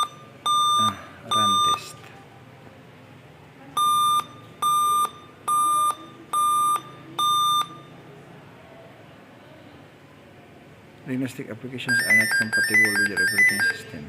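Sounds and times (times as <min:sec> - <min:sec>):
laptop high electronic beeps: 0:00.0 - 0:02.0, 0:03.8 - 0:07.9, 0:11.9 - 0:13.9.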